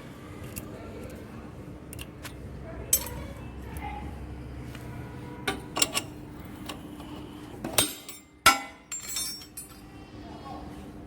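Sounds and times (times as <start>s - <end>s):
metallic knocks and clinks of tools: 7.7s - 9.8s.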